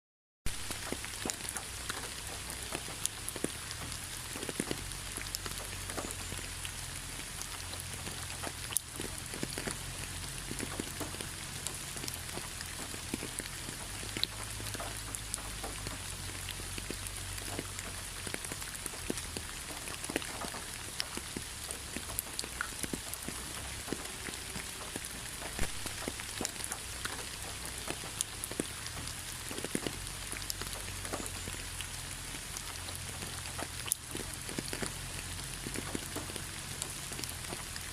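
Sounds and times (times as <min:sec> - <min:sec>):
heavy rain falling: 0:00.5 - 0:37.9
raindrops splashing on surfaces: 0:00.5 - 0:37.9.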